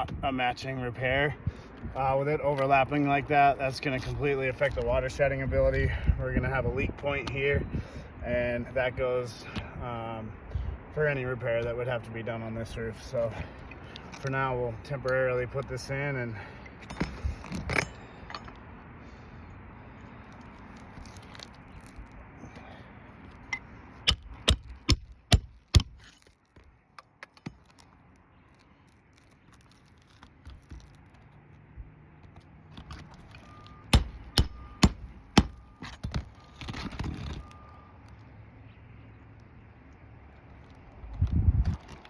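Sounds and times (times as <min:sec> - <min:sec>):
hammer striking roofing nails: 0:24.1 - 0:26.0, 0:33.9 - 0:36.2.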